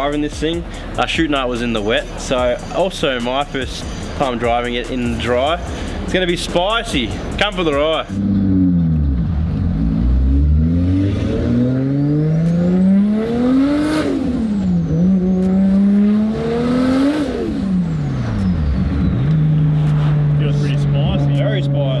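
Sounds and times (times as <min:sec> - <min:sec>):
car engine revving: 0:00.0 - 0:22.0
turbo whine: 0:06.6 - 0:22.0.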